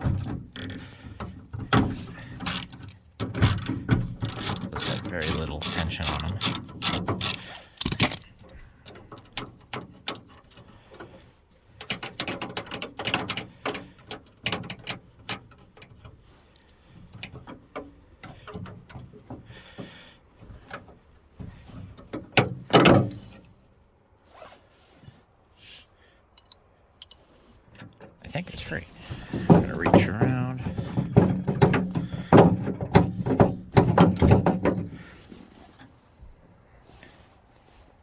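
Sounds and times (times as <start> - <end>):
socket ratchet clicking: 2.4 - 2.7, 3.4 - 8.2.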